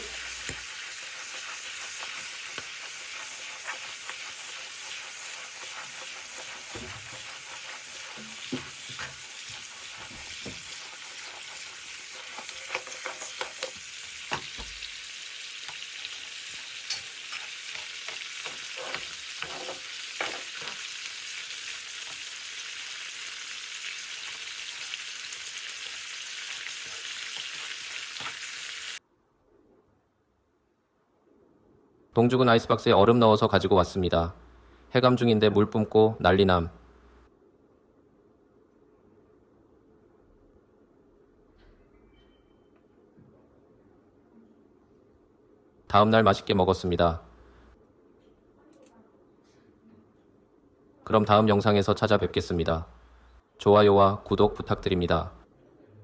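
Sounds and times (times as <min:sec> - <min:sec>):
utensil scraping a pan: 0:00.0 - 0:22.3, 0:24.0 - 0:28.8
clams sizzling in a pan: 0:00.0 - 0:29.0.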